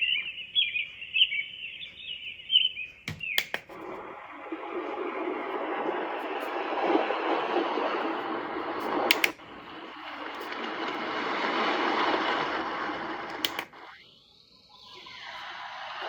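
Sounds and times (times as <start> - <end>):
button clicks: 3.1 - 3.8, 9.1 - 9.4
sound machine hissing noise: 3.7 - 16.0.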